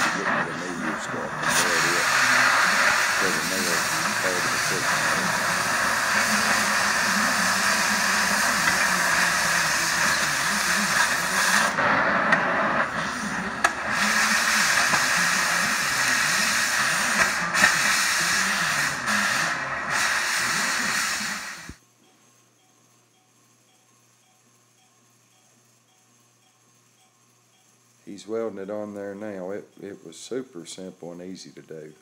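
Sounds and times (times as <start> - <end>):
welding hiss: 0.0 - 21.8.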